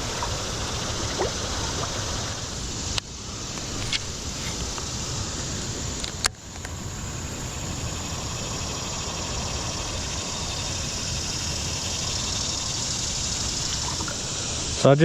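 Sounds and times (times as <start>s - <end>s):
creek water rushing: 0.0s - 5.9s, 9.4s - 14.9s.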